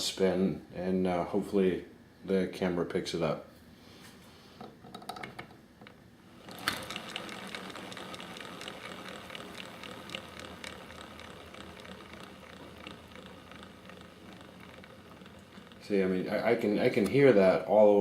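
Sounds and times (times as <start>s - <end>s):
fast clicks of spinning rotor gears: 6.4s - 17.5s.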